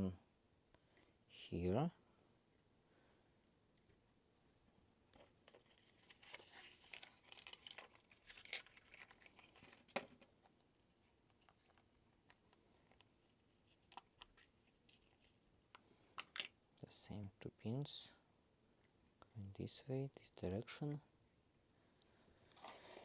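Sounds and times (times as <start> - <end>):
clicks and rustling of small parts: 5.1 - 10.5, 11.3 - 16.6.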